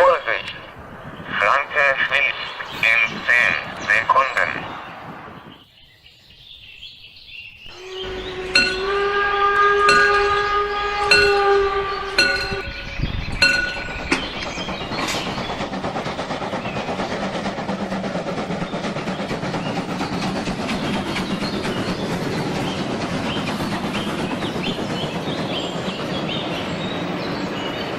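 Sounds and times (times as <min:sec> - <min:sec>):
train horn: 0:07.7 - 0:13.2
bell-like strikes: 0:07.7 - 0:14.7
train rumbling past: 0:07.7 - 0:27.9
clickety-clack of wheels: 0:07.8 - 0:27.9.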